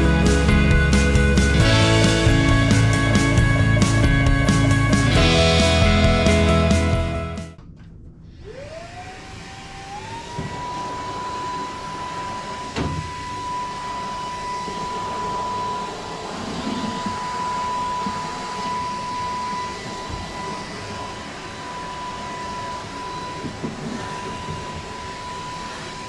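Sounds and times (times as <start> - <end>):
electric motor whining: 8.5 - 26.0.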